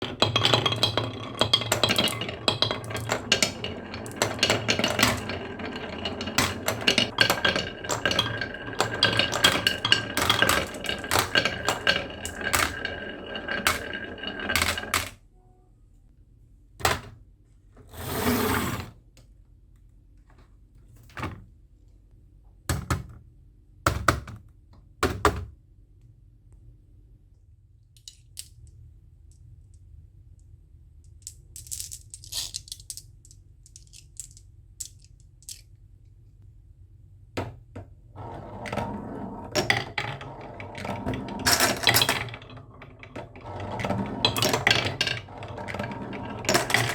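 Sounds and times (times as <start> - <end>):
marble rolling rush: 0.0 - 15.1, 38.1 - 46.9
marbles clattering down wooden run: 0.0 - 15.1, 38.2 - 46.9.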